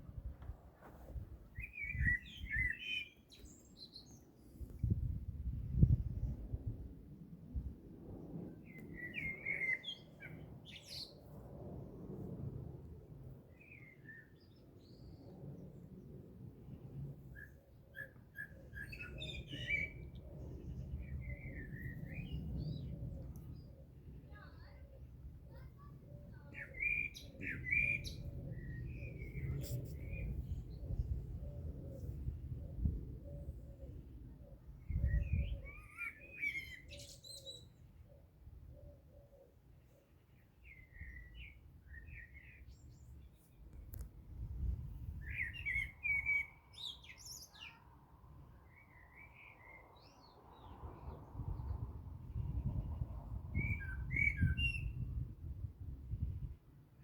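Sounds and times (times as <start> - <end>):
small birds chirping: 25.5 - 31.1
bird whistling: 26.7 - 28.2.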